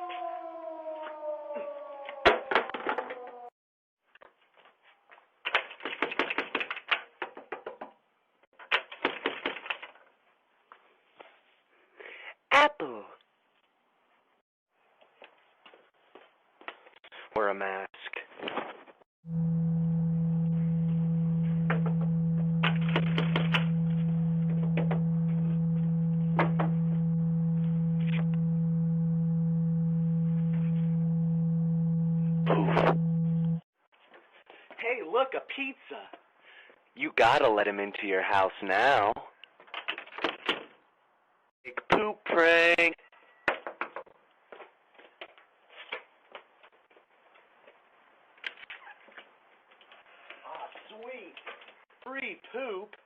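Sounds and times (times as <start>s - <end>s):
low steady electronic tone: 19.3s - 33.6s.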